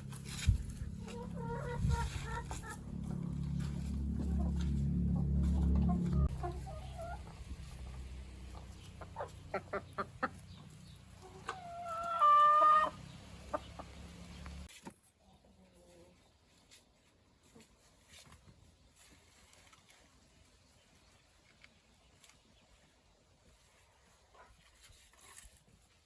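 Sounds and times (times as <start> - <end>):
low rumble: 0.0 - 9.0
chickens clucking: 0.0 - 18.4.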